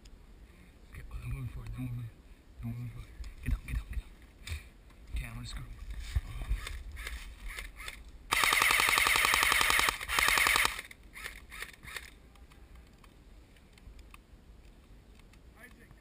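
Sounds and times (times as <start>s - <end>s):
airsoft gun firing bursts: 8.3s - 11.3s.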